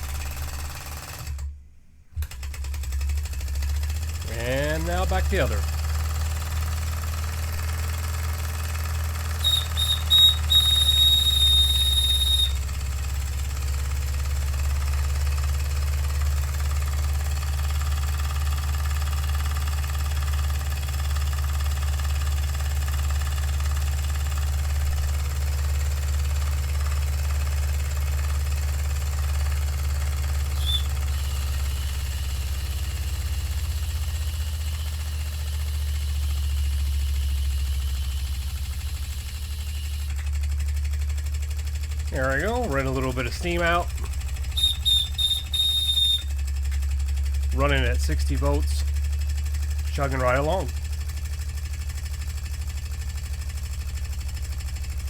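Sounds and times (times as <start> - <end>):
toy steam engine humming: 2.6 - 40.2, 42.0 - 46.6
steam whistle toots: 9.3 - 12.9, 30.5 - 32.2, 35.9 - 40.2, 43.5 - 46.4.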